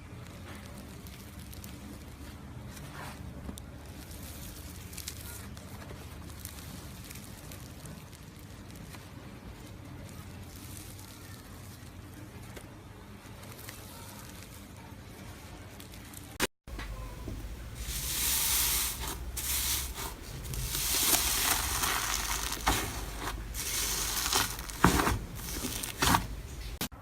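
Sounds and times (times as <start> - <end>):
slime squished by hand: 16.8 - 26.8.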